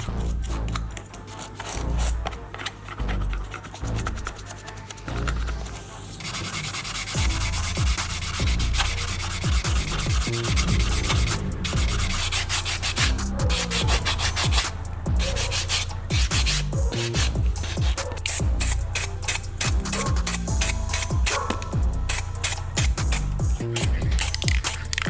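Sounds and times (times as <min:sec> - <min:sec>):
sandpaper rubbing: 0:00.0 - 0:25.0.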